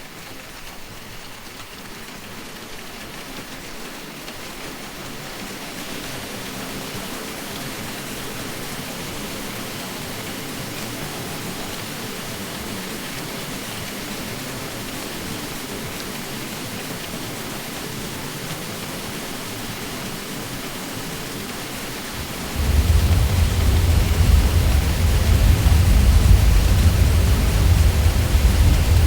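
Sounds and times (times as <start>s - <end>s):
ceiling fan hiss: 0.0s - 29.0s
deep low hum: 22.2s - 29.0s.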